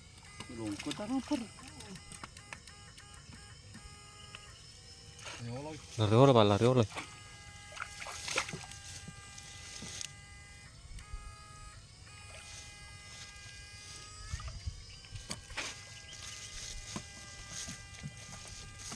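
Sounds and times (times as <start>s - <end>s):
motor whining: 0.0s - 18.9s
sharp clicks: 0.2s - 5.2s.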